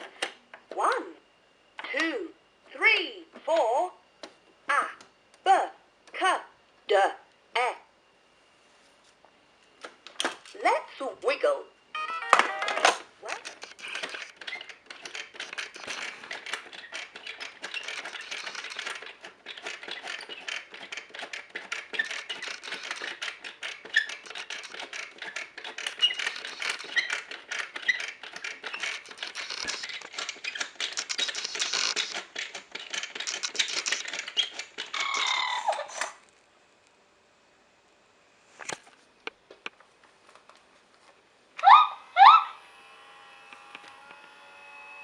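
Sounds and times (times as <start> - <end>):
plastic toy clicking and rattling: 12.7 - 36.2.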